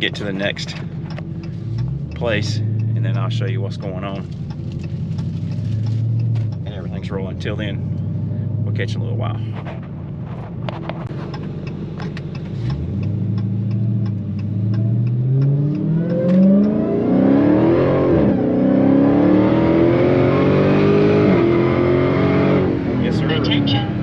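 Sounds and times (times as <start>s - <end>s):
light ticking: 0.0s - 8.6s, 11.2s - 16.8s
car engine accelerating hard: 0.0s - 24.0s.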